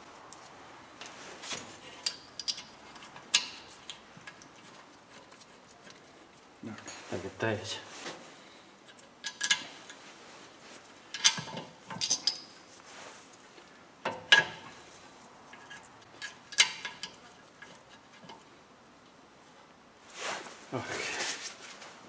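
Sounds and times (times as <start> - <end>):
metal tools clinking and rattling: 11.1 - 12.6.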